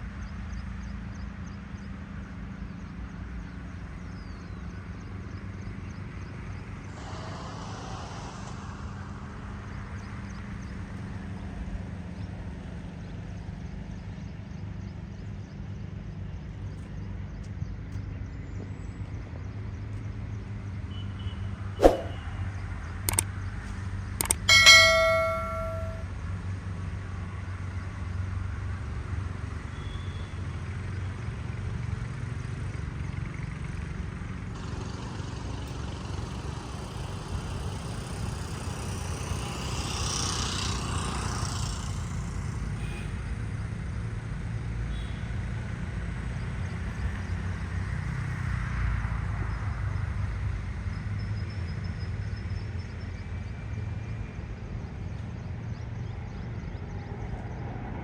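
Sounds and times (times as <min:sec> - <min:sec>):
low rumble of road traffic: 0:00.0 - 0:58.0
vehicle passing by: 0:06.9 - 0:10.0.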